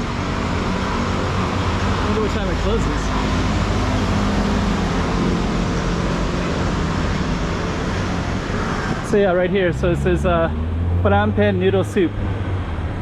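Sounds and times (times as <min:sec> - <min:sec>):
city traffic engine hum: 0:00.0 - 0:13.0.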